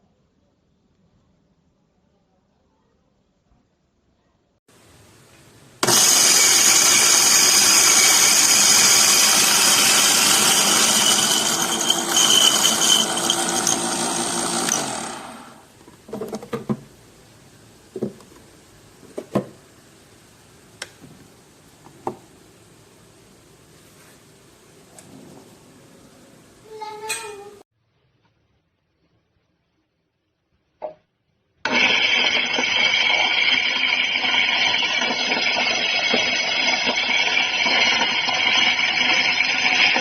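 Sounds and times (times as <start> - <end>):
electric coffee grinder motor: 5.8 - 15.7, 31.7 - 40.0.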